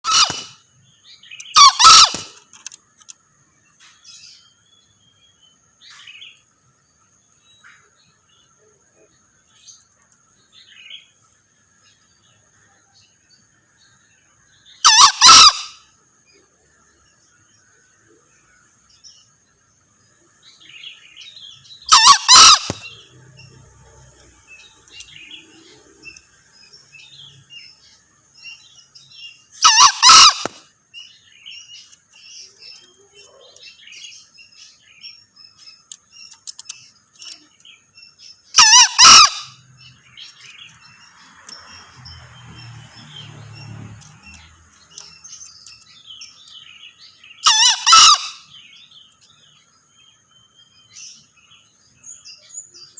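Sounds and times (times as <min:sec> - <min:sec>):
junglefowl crowing: 0:00.0 - 0:00.6, 0:01.4 - 0:02.5, 0:14.8 - 0:15.8, 0:21.9 - 0:23.0, 0:29.6 - 0:30.6, 0:38.6 - 0:39.6, 0:47.4 - 0:48.7
small birds chirping: 0:00.0 - 0:52.9.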